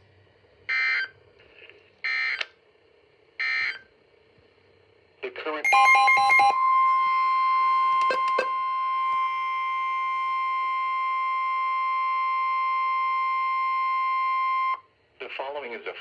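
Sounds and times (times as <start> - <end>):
steady alarm tone: 5.6 - 14.8.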